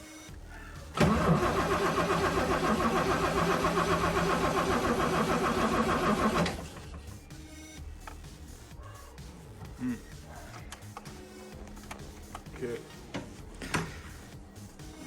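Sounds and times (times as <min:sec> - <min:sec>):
petrol engine starting and running: 0:00.9 - 0:07.1.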